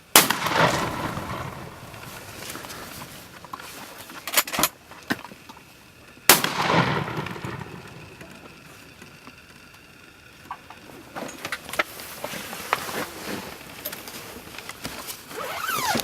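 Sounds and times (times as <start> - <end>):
loud shotgun blast echoing: 0.1 - 2.9, 6.3 - 8.4.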